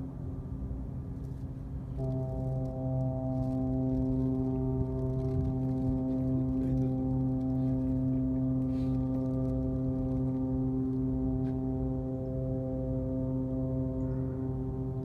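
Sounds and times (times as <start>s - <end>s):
ship's horn long blast: 2.0s - 9.1s.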